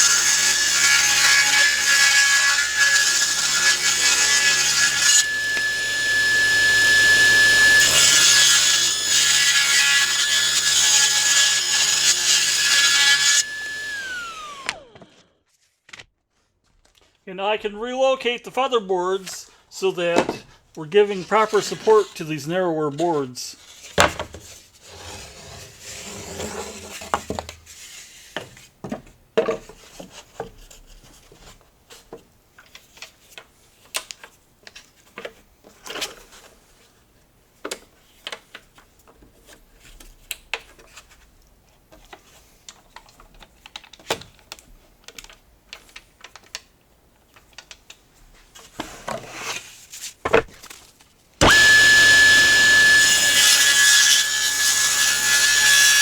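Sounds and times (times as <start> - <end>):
table saw running with whine: 0.0 - 15.1, 51.4 - 56.0.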